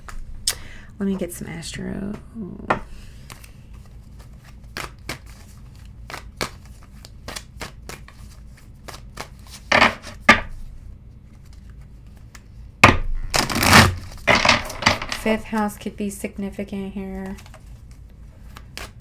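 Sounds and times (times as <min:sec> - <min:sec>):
cards being shuffled: 0:03.1 - 0:12.6, 0:13.2 - 0:15.7, 0:17.1 - 0:19.0.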